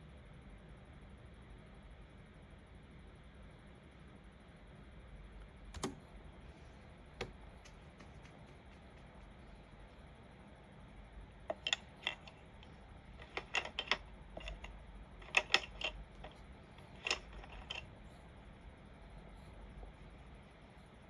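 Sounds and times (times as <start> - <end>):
faint room hum: 0.0 - 21.0
keyboard keys clicking: 5.8 - 6.0.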